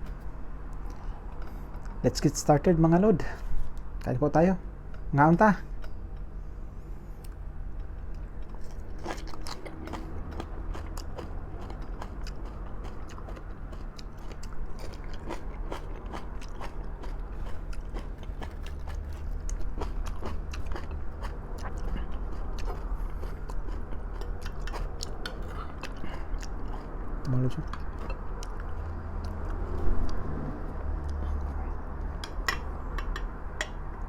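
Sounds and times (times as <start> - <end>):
steady low hum: 0.0 - 34.0
wet chewing and mouth clicks: 7.2 - 33.8.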